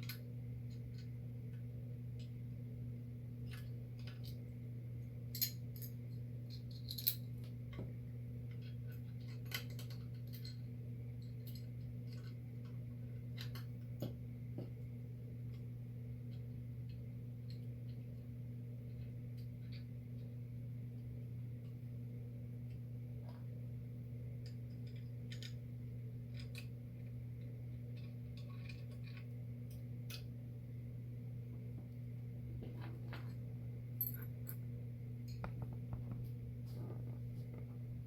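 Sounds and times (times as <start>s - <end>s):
steady low hum: 0.0s - 38.0s
metal parts and tools clinking: 5.3s - 7.3s, 34.0s - 34.6s.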